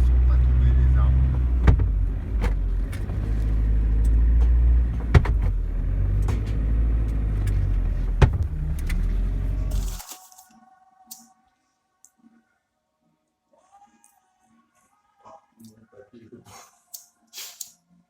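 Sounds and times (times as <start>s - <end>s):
car engine and road noise: 0.0s - 10.1s
sharp knocks: 1.5s - 3.2s, 4.4s - 6.7s, 8.1s - 8.7s.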